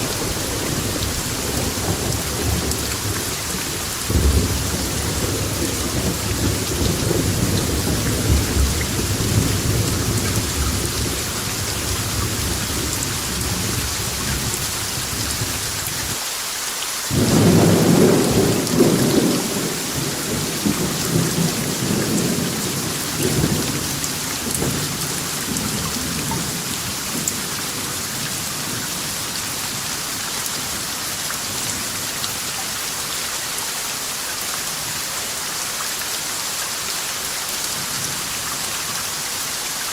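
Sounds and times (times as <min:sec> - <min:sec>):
rolling thunder: 0:00.0 - 0:15.8, 0:17.1 - 0:28.9
steady rain: 0:00.0 - 0:39.9.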